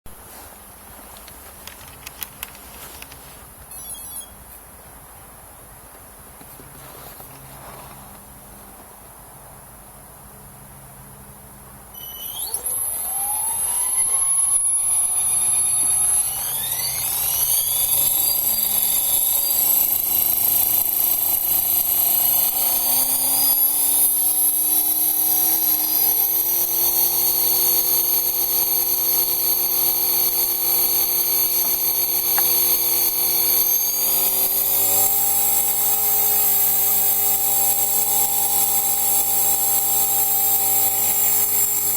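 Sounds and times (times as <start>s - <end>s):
electric motor whine: 12.0s - 41.9s.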